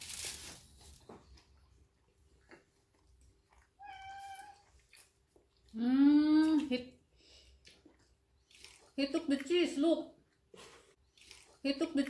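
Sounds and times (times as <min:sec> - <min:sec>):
drawn-out pet call: 0:03.8 - 0:04.6.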